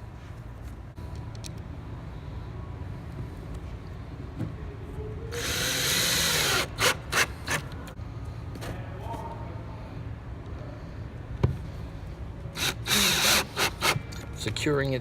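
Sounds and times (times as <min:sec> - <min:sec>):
power drill driving a screw: 0:05.4 - 0:07.6, 0:12.6 - 0:14.0.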